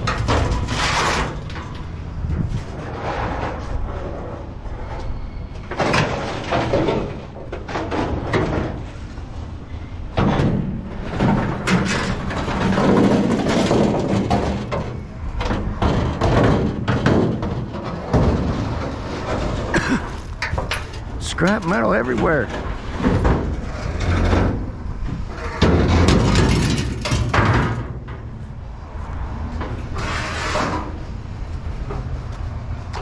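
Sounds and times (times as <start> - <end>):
scrap metal clanking: 0.0 - 4.3, 10.2 - 28.3.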